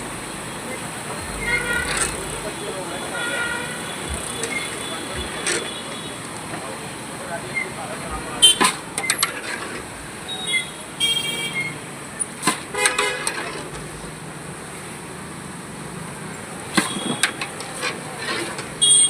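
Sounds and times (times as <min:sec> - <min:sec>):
vehicle horns honking: 0:01.2 - 0:06.3, 0:08.4 - 0:08.8, 0:10.3 - 0:11.8, 0:12.7 - 0:13.4, 0:16.8 - 0:17.4, 0:18.8 - 0:19.0.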